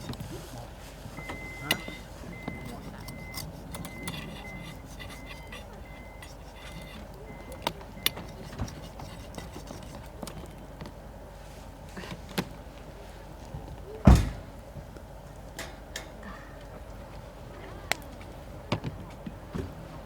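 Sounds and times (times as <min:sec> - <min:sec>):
heavy thump: 0:14.1 - 0:14.5.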